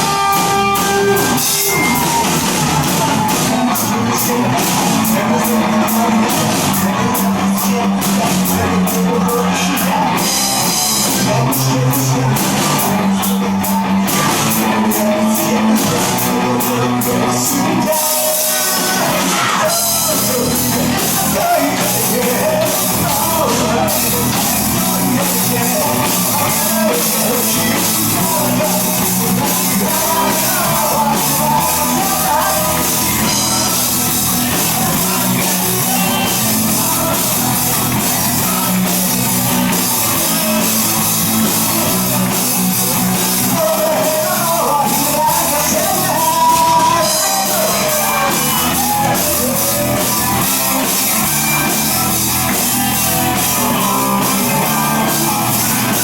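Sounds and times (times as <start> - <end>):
band playing rock song live: 0.0 - 56.0
lead vocal singing: 0.0 - 56.0.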